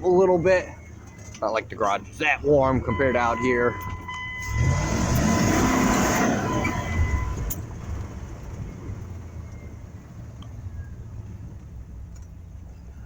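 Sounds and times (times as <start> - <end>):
thin steady whine: 0.0 - 7.6
truck engine revving: 0.0 - 13.0.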